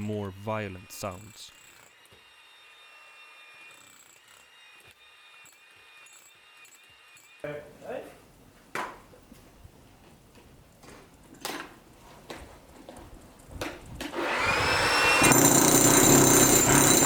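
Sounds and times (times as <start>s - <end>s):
motor whirring grind: 14.1s - 17.0s.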